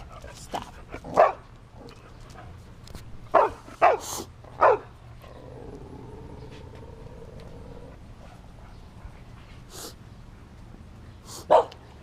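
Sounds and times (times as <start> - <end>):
dog barking: 1.1 - 1.4, 3.3 - 4.9, 11.5 - 11.8.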